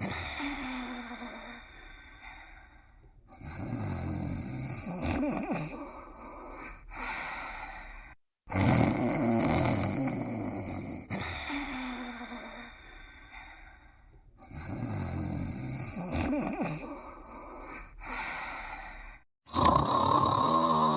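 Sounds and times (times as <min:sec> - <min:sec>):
cartoon characters snoring: 0:03.3 - 0:06.8, 0:08.5 - 0:12.7, 0:14.4 - 0:18.2, 0:19.5 - 0:20.9.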